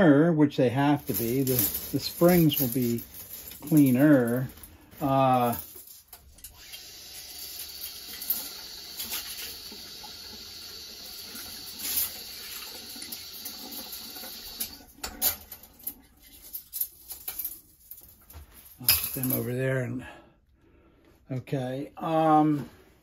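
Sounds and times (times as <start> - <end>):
water running from a tap: 5.5 - 15.7.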